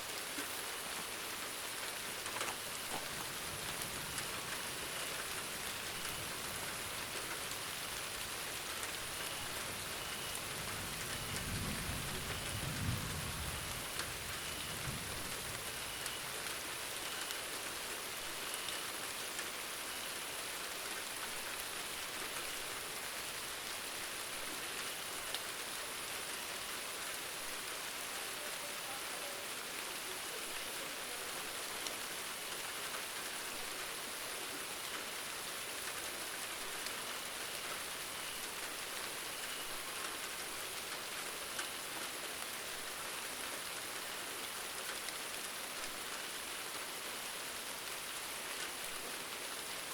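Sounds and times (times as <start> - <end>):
steady rain pattering: 0.0 - 49.9
distant thunder rumble: 10.5 - 15.7.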